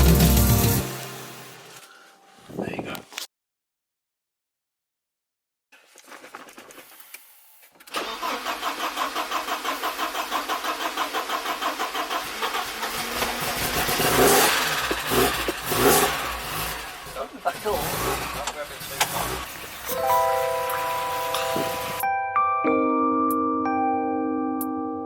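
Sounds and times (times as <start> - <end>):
car engine cranking and starting: 7.8 - 22.0
car engine revving: 8.2 - 20.0.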